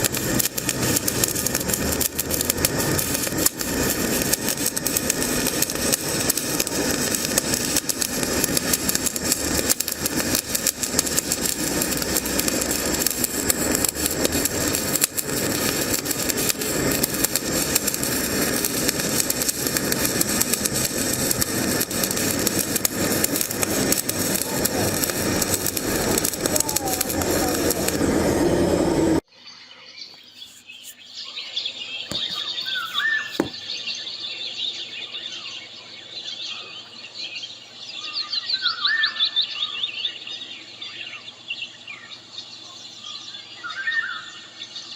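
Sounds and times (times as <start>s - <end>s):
welding arc crackling: 0.0s - 29.3s, 32.1s - 33.8s.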